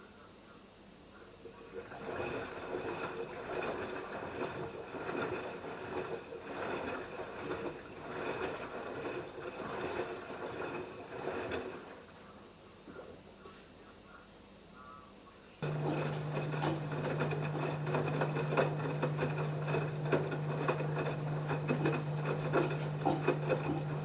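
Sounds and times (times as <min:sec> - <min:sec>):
water and laundry sloshing: 0:01.6 - 0:12.2, 0:15.6 - 0:24.0
washing machine drum turning: 0:15.6 - 0:24.0.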